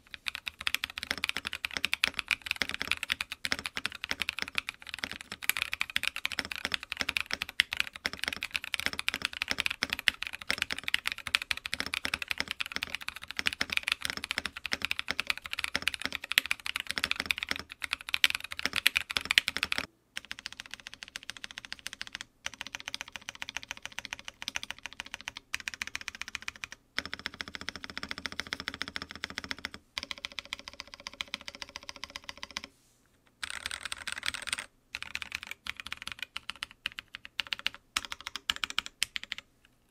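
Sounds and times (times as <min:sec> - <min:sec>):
typing on mechanical keyboard: 0:00.0 - 0:32.7, 0:33.4 - 0:39.5.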